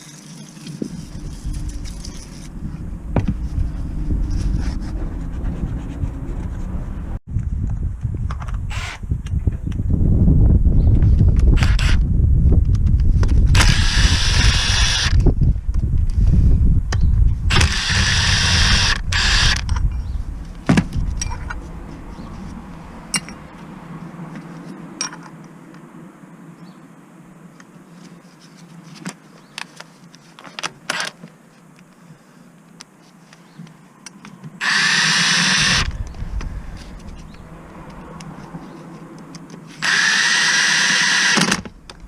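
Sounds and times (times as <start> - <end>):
cordless power tool running: 13.6 - 15.2, 17.5 - 19.6, 34.6 - 35.9, 39.8 - 41.6.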